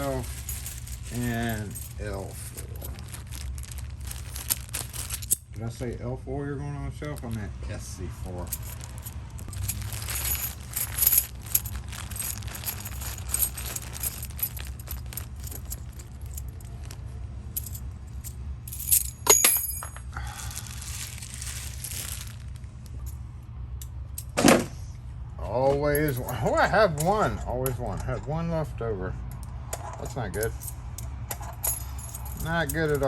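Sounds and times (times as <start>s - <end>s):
metal keys clinking: 0.0s - 5.6s, 8.3s - 23.2s, 29.3s - 33.0s
steady low hum: 0.0s - 26.6s.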